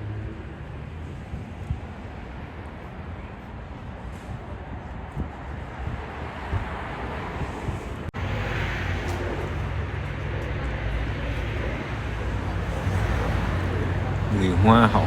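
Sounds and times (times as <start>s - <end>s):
traffic rumble: 0.0s - 15.0s
indistinct voices: 11.6s - 15.0s.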